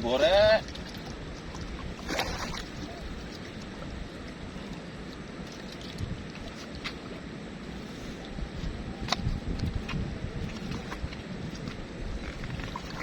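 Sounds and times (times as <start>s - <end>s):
wind buffeting microphone: 5.8s - 13.0s.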